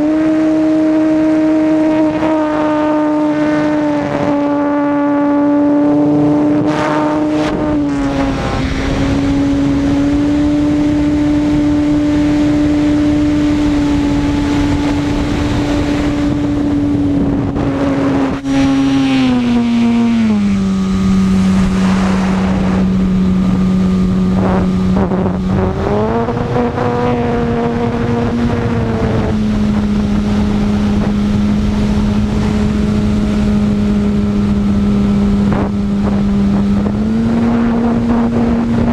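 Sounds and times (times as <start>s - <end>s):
wind noise: 0.0s - 38.9s.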